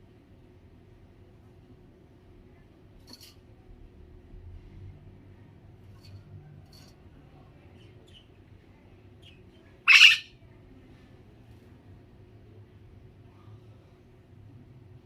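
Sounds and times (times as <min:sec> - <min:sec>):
parrot chirping: 0:09.2 - 0:10.3
parrot squawk: 0:09.9 - 0:10.3.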